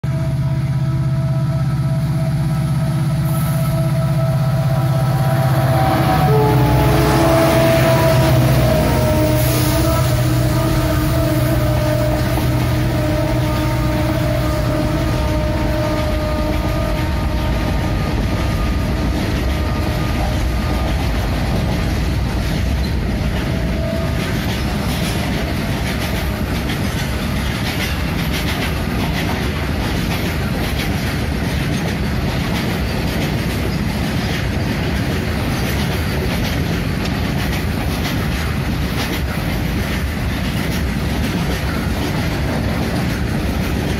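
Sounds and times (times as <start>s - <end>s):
diesel locomotive engine hum: 0.0s - 43.9s
wheels clicking over rail joints: 11.8s - 43.9s
rumble of wagons rolling: 14.5s - 43.9s.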